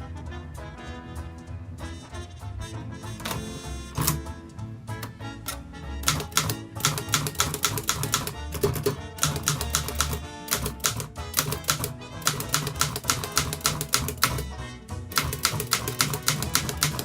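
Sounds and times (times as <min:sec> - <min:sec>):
background music with bass line: 0:00.0 - 0:17.0
typewriter keys clacking: 0:03.3 - 0:04.2, 0:06.0 - 0:14.4, 0:15.1 - 0:17.0.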